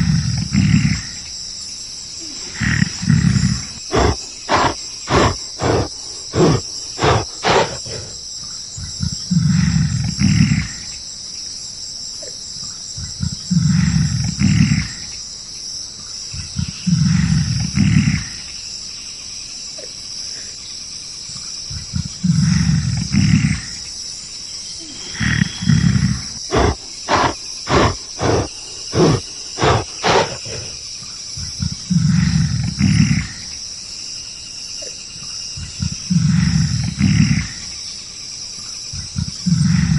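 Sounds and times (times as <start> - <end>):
high insect chorus: 0.0 - 39.9
large animal roaring: 2.2 - 8.2, 24.9 - 30.8.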